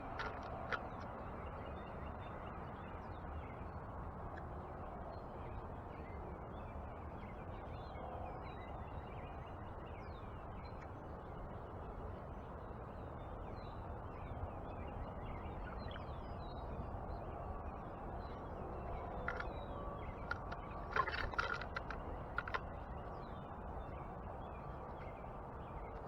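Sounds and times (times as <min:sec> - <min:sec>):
songbirds chirping: 0:00.0 - 0:26.0
steady outdoor hum: 0:00.0 - 0:26.0.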